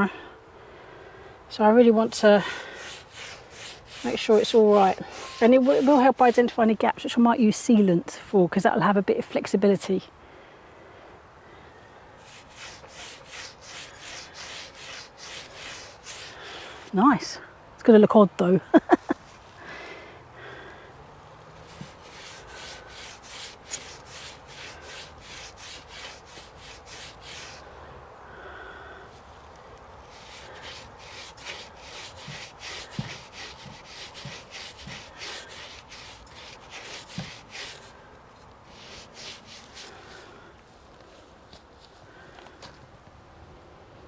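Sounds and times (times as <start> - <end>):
paintbrush scratchy strokes: 2.1 - 6.6, 12.2 - 16.9, 21.6 - 27.6, 30.1 - 37.9, 38.6 - 40.2.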